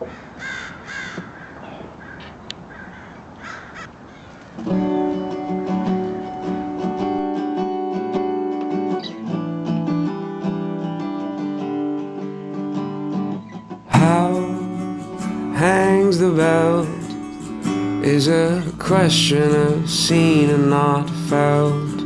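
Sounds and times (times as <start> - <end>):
acoustic guitar strummed chords: 4.6 - 22.0.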